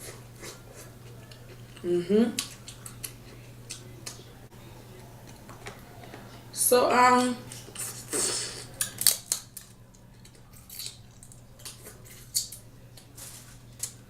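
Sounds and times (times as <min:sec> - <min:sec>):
crab shells cracking: 0:08.7 - 0:14.0.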